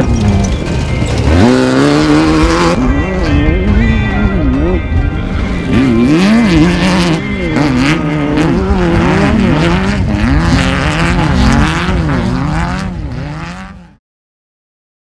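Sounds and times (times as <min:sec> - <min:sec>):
buggy engine revving: 0:00.0 - 0:14.0.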